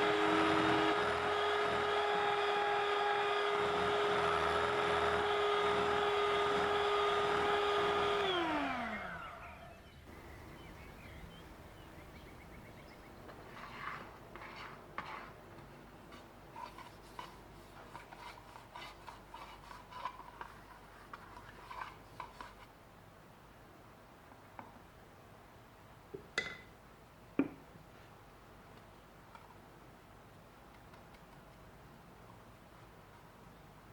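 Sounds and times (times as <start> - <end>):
electric mixer motor whining: 0.0 - 10.6
light taps and scrapes: 13.2 - 22.8.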